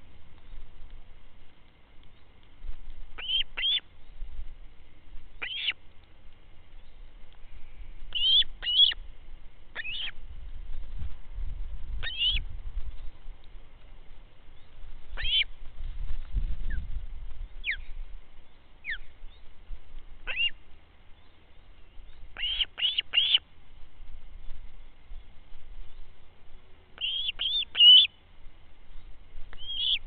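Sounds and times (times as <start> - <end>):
bird chirping: 3.2 - 4.2, 5.4 - 5.8, 8.1 - 9.1, 9.7 - 10.2, 12.0 - 13.2, 14.5 - 15.6, 17.5 - 19.5, 20.2 - 23.4, 24.4 - 28.2, 28.9 - 30.0.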